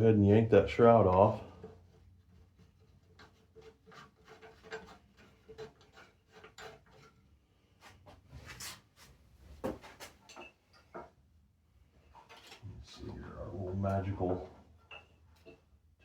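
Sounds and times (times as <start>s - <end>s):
tools clicking and scraping on metal: 1.4s - 7.3s, 14.8s - 15.7s.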